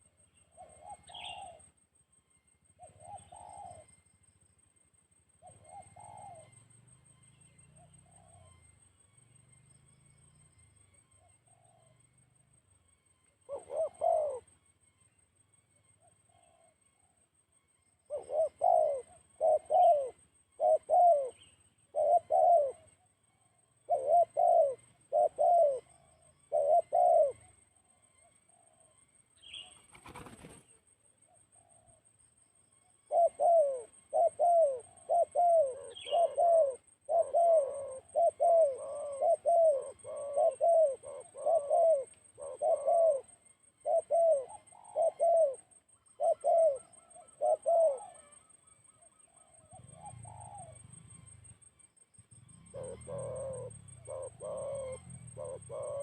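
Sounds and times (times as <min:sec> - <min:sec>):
dove cooing: 0:00.0 - 0:01.8, 0:02.8 - 0:04.1, 0:05.4 - 0:09.3, 0:11.0 - 0:12.2, 0:13.4 - 0:14.6, 0:16.0 - 0:17.2, 0:18.0 - 0:32.1, 0:32.9 - 0:56.0
wing flutter: 0:29.6 - 0:30.9.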